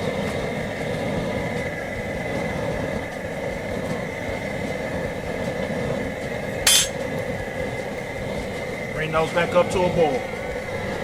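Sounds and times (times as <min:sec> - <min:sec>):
burner rushing under pot: 0:03.6 - 0:10.8
sharp metal clink: 0:06.7 - 0:07.0.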